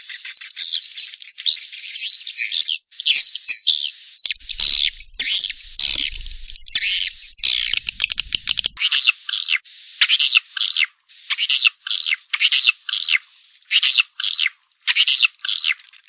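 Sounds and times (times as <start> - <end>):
swiftlets twittering: 4.3 - 8.8.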